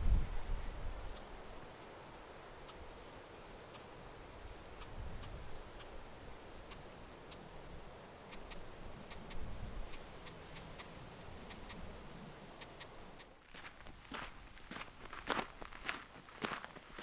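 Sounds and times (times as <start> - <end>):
wind gusting against microphone: 0.0 - 16.0
sharp high ticks: 8.3 - 11.8.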